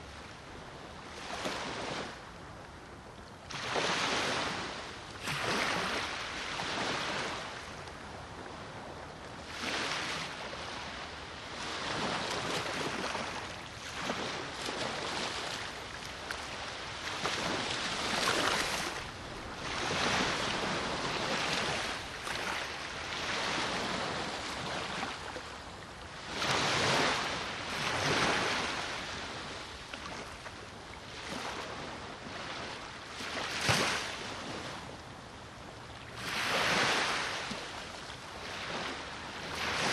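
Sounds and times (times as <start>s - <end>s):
wind: 0.0s - 39.9s
sea waves washing in: 9.4s - 30.4s.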